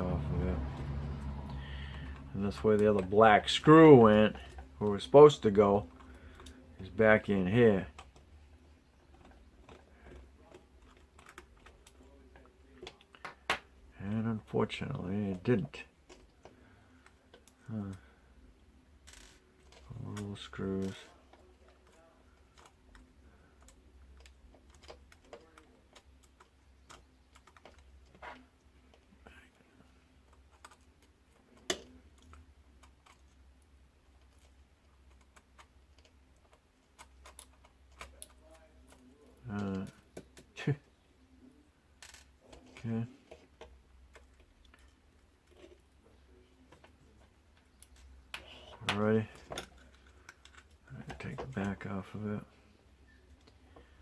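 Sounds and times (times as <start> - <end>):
low steady hum: 0.0 - 54.0
small parts clicking: 30.2 - 40.6, 42.0 - 45.9, 46.6 - 51.7.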